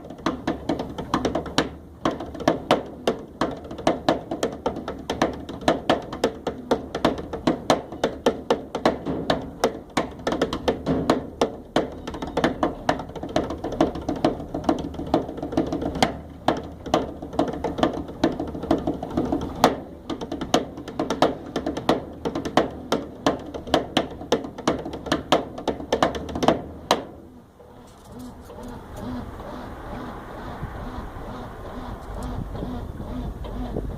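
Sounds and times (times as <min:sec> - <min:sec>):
percussive taps and knocks: 0:00.0 - 0:27.2.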